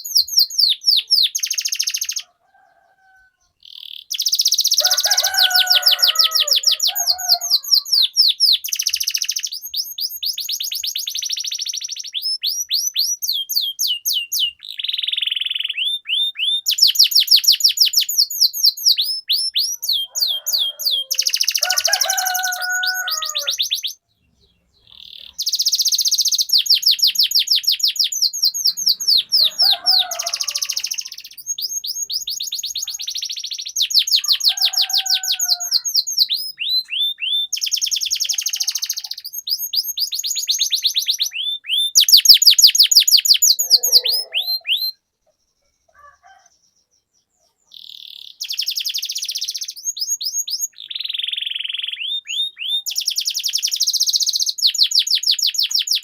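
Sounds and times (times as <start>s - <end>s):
canary singing trills: 0.0s - 56.0s
faint low bird calls: 19.0s - 46.6s.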